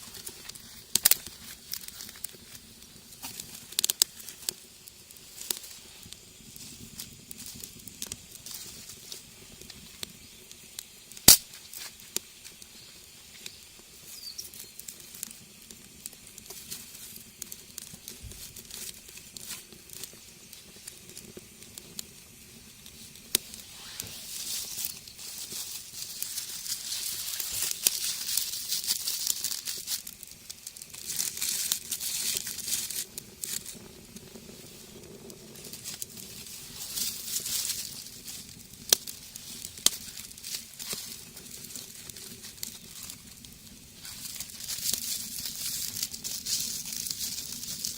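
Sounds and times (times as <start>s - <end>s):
wood fire crackling: 0.0s - 47.9s
high hissing rush: 23.4s - 26.0s.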